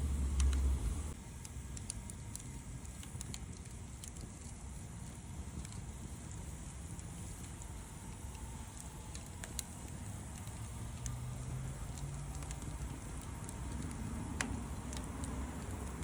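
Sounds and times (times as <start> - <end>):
low rumble: 0.0 - 1.2
bonfire crackling and popping: 0.0 - 16.0.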